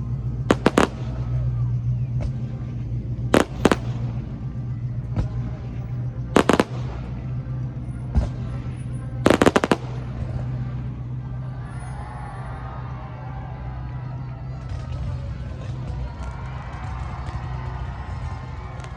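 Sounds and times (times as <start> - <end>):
fireworks bangs and crackling: 0.0 - 11.4.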